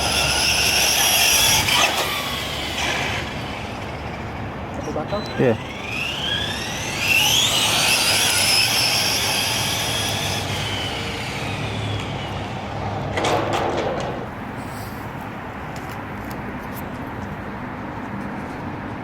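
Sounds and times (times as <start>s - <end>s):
rc truck motor whine: 0.0s - 13.2s.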